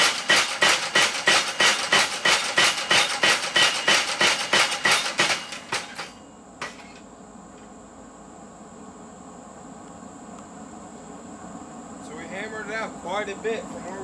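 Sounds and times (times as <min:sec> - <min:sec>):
power hammer ringing metal blows: 0:00.0 - 0:07.0.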